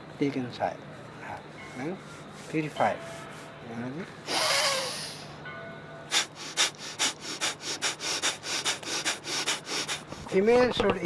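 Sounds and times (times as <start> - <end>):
rapid forceful nasal exhalations: 4.3 - 5.3, 6.1 - 10.4
long loud breath: 4.3 - 5.4, 6.1 - 10.3.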